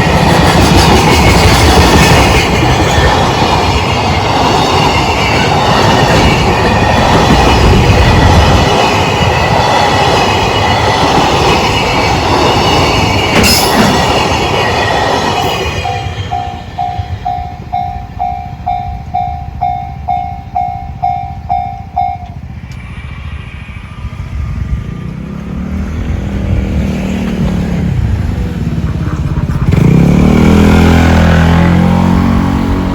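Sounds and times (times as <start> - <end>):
train wheels clattering: 0.0 - 22.9
level crossing alarm ringing: 13.4 - 22.6
road vehicle passing: 22.3 - 32.9.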